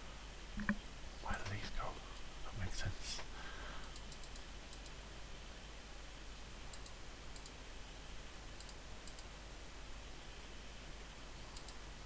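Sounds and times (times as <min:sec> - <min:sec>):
steady low hum: 0:00.0 - 0:05.5
faint short clicks: 0:11.6 - 0:11.8.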